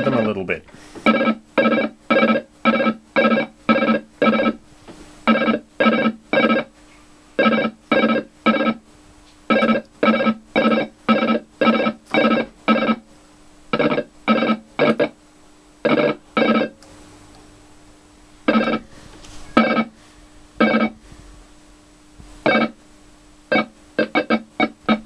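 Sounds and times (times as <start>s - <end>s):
pulsing buzzy synthesizer tone: 1.1s - 4.6s, 5.3s - 6.7s, 7.4s - 8.8s, 9.5s - 13.1s, 13.7s - 15.2s, 18.5s - 18.9s, 19.6s - 19.9s, 20.6s - 21.0s, 22.4s - 22.8s, 23.5s - 25.0s.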